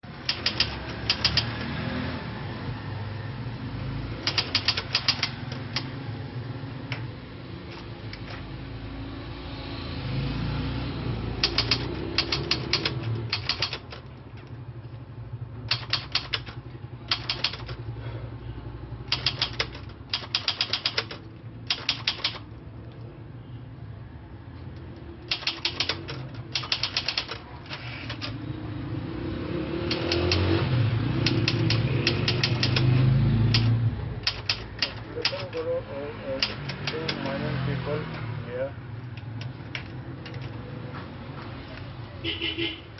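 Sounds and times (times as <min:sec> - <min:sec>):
typewriter keys clacking: 0:00.1 - 0:01.7, 0:04.2 - 0:05.9, 0:11.4 - 0:14.4, 0:15.7 - 0:17.8, 0:19.1 - 0:22.6, 0:25.3 - 0:28.4, 0:29.9 - 0:30.5, 0:31.2 - 0:32.9, 0:33.5 - 0:35.7, 0:36.4 - 0:37.4, 0:39.4 - 0:40.6.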